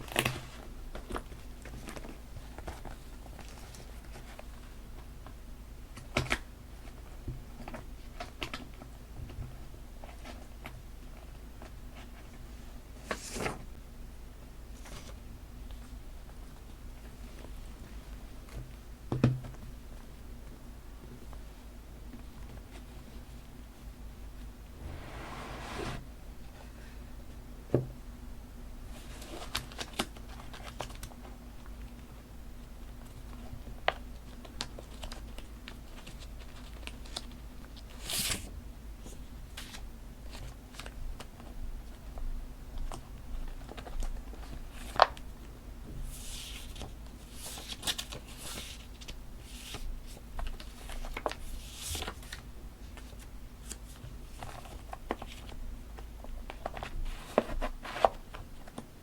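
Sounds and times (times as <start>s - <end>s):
papers rustling and crinkling: 56.3s - 58.9s.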